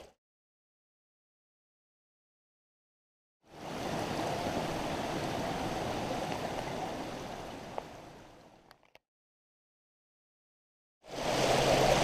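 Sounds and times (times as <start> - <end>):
mountain stream rushing: 3.5 - 8.4, 11.1 - 12.0.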